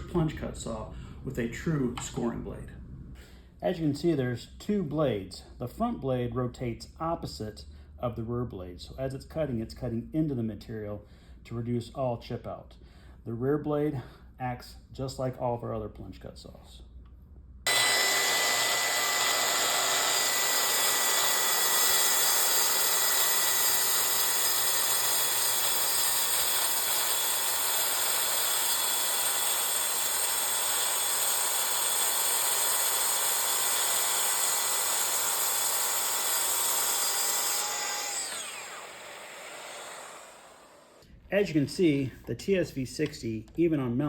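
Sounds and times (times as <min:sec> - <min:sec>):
saw motor winding down: 0:17.7 - 0:41.0
saw whining while cutting board: 0:17.7 - 0:41.0.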